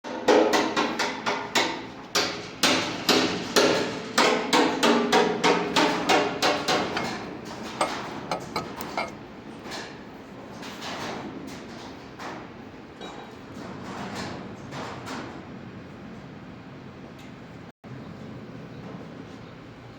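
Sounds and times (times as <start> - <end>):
hammer striking metal: 5.8 - 9.1.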